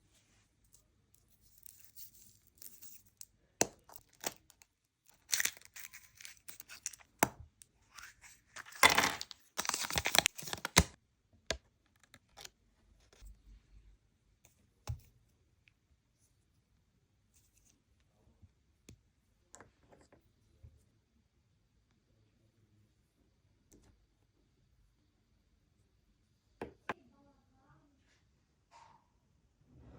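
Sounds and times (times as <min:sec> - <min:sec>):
wrapper tearing and crinkling: 0:05.1 - 0:07.0, 0:08.5 - 0:11.0.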